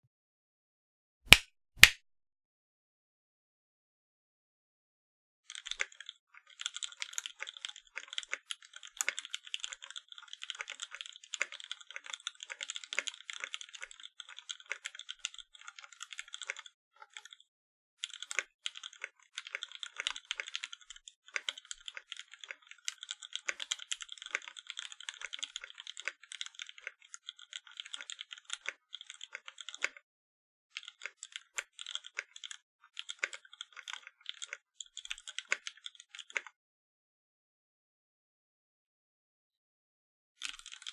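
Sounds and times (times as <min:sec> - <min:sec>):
fast typing on mechanical keyboard: 0:05.5 - 0:17.4, 0:18.0 - 0:30.0, 0:30.7 - 0:36.6, 0:40.4 - 0:40.9.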